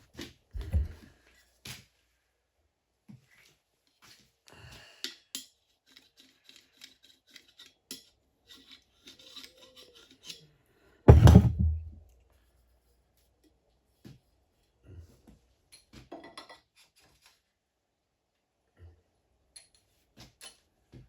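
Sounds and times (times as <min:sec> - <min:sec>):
loud heavy thump: 0:11.1 - 0:12.0.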